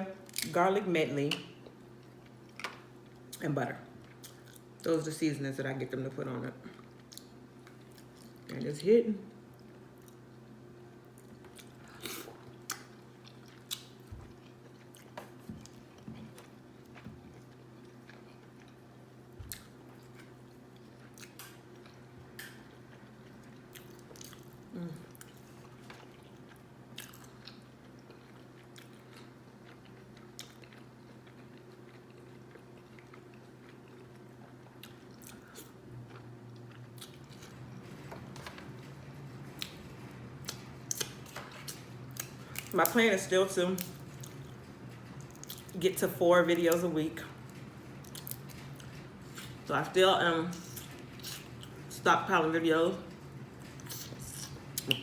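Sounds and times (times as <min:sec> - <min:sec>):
low steady hum: 0:00.0 - 0:55.0
person chewing and lip-smacking: 0:11.1 - 0:18.8, 0:19.4 - 0:37.5, 0:53.8 - 0:55.0.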